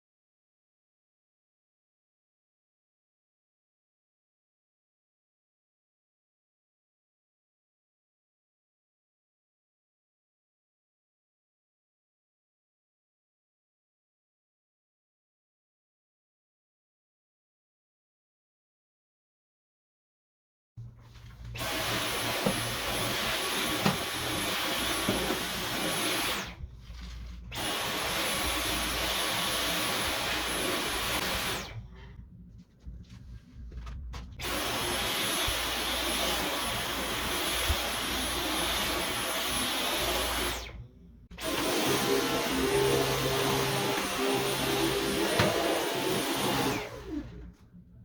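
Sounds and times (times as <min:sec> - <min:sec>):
cordless vacuum running: 0:21.6 - 0:26.6, 0:27.5 - 0:31.8, 0:34.4 - 0:40.8, 0:41.4 - 0:47.6.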